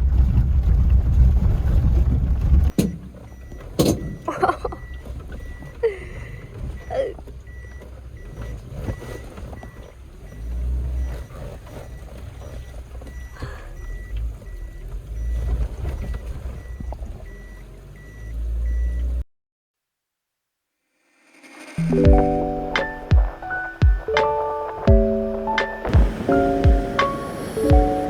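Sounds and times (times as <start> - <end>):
car rumble: 0.0 - 19.2, 21.2 - 28.0
knocks and clicks: 2.7 - 3.1, 21.8 - 28.0
faint repeating beep: 16.6 - 19.1.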